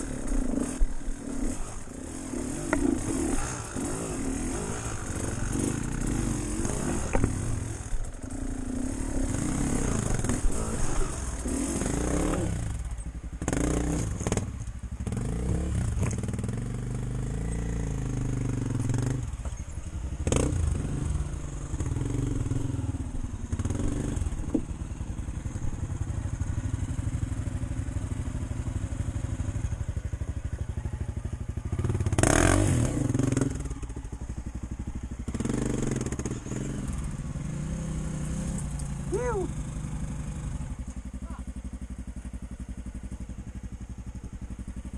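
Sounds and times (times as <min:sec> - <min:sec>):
motorcycle engine: 0:00.0 - 0:44.9
motorcycle knocking over rough ground: 0:06.9 - 0:07.4.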